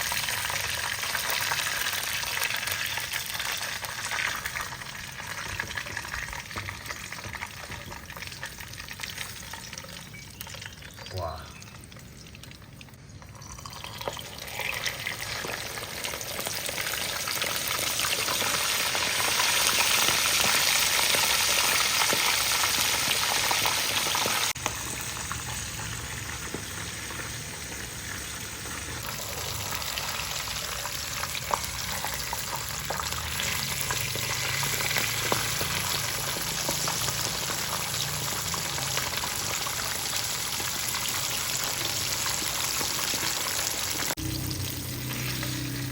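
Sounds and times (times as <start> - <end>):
food sizzling in hot oil: 0.0 - 45.9.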